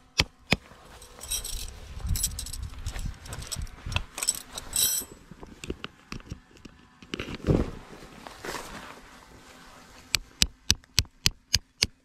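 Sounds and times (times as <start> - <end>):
rustling: 0.6 - 5.6, 7.2 - 10.2.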